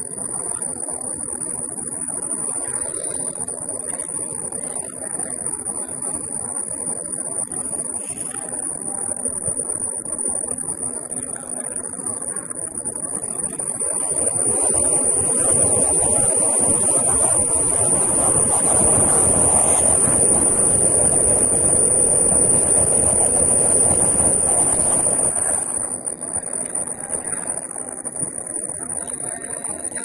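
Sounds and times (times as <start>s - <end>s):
quilting machine whining: 11.9s - 30.0s.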